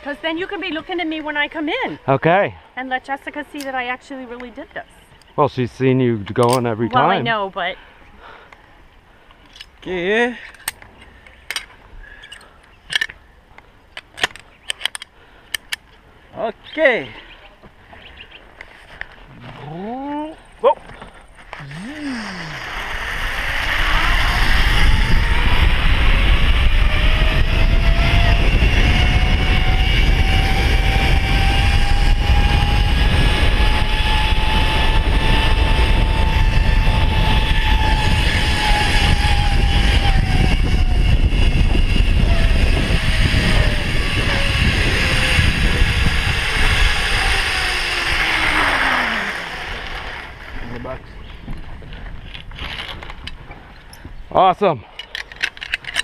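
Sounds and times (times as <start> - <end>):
zip-line pulleys whining on cable: 0.0 - 2.2, 21.0 - 51.4
wind rumble on microphone: 21.2 - 54.3.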